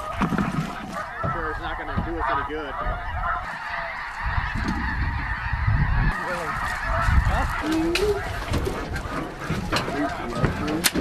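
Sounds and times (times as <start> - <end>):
geese honking: 0.0 - 11.0
wind buffeting microphone: 0.0 - 11.0.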